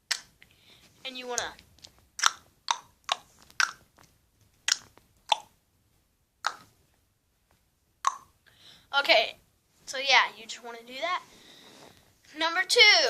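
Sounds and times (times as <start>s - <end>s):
tongue clicks: 0.1s - 0.5s, 1.4s - 3.9s, 4.6s - 5.6s, 6.4s - 6.7s, 8.0s - 8.4s.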